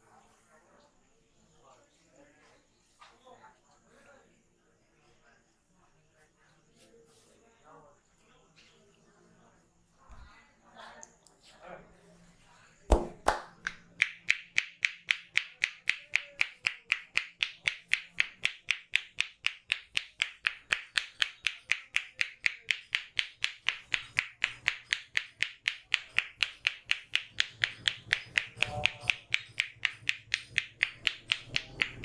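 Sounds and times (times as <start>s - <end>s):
hands clapping on a head: 12.9s - 32.0s.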